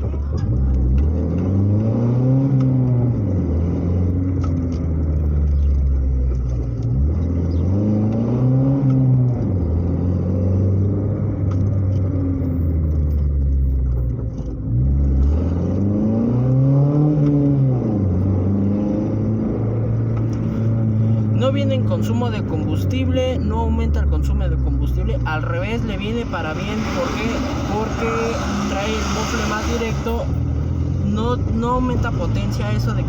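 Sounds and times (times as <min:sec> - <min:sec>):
car engine revving: 0:00.0 - 0:33.0.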